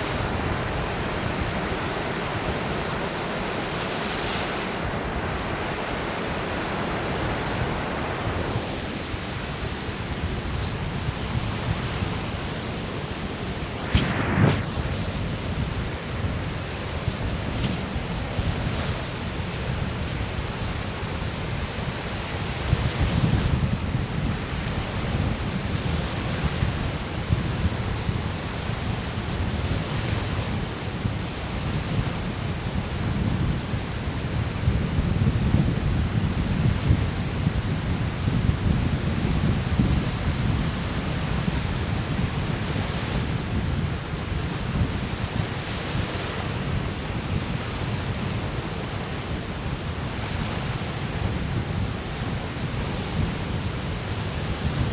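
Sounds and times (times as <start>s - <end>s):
surf washing on sandy shore: 0.0s - 54.9s
wind rumbling on microphone: 0.0s - 54.9s.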